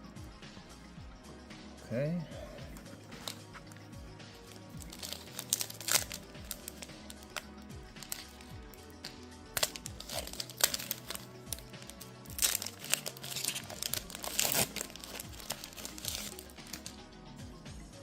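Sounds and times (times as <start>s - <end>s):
background music: 0.0s - 18.0s
foil wrapper crinkling and tearing: 3.1s - 3.8s, 4.5s - 7.4s, 8.0s - 17.0s
sharp foil crackles: 4.5s - 7.4s, 8.0s - 8.5s, 9.5s - 16.9s.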